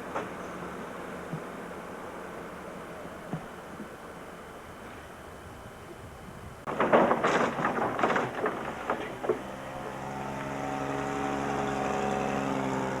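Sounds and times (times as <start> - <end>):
engine drone: 6.6 - 13.0
clattering knocks: 6.7 - 10.5.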